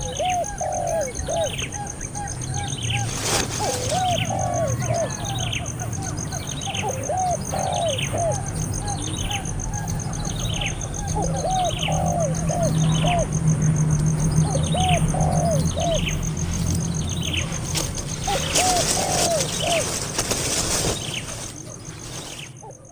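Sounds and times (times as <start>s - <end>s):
high falling bird chirps: 0.0s - 22.9s
lower hooked bird calls: 0.0s - 22.9s
rustling noise: 3.0s - 4.2s, 17.5s - 22.6s.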